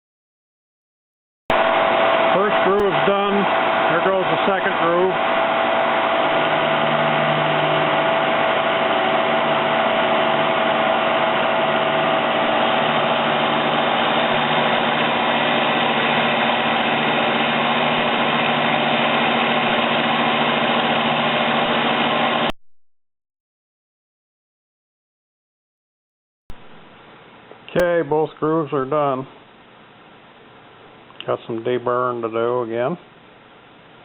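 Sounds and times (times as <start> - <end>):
milling machine whining: 1.5 - 22.5.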